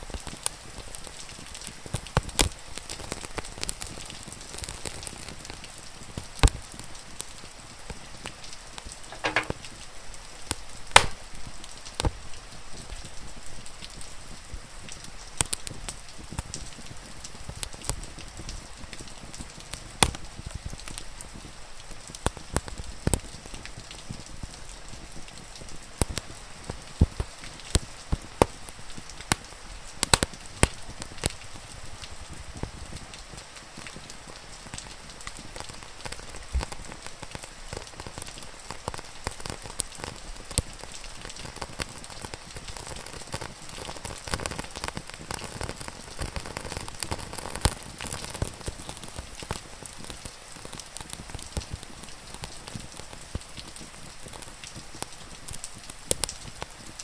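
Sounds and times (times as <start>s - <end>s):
rain hissing: 0.0s - 57.0s
wood fire crackling and popping: 0.0s - 57.0s.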